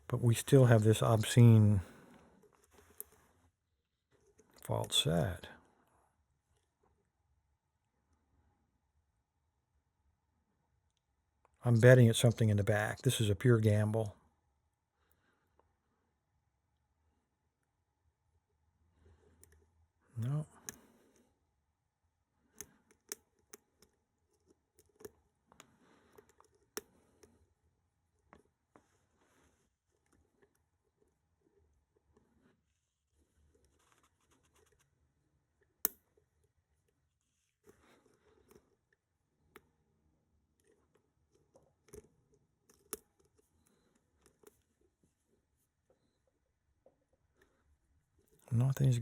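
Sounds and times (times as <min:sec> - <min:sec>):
lock pick clicking and scraping: 0:22.6 - 0:25.2, 0:26.1 - 0:26.9.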